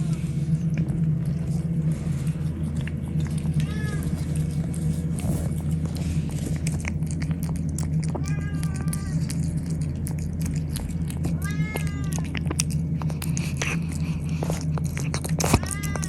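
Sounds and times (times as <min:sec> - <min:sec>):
steady low hum: 0:00.0 - 0:16.0
cat meowing: 0:03.5 - 0:04.4, 0:08.1 - 0:09.4, 0:11.3 - 0:12.4, 0:15.5 - 0:16.0.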